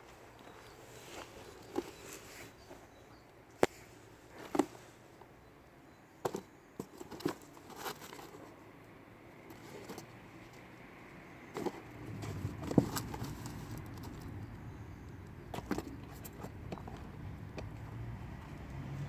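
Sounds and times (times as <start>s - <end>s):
kittens bumping cardboard box: 6.2s - 8.3s, 11.4s - 14.4s, 15.5s - 17.7s.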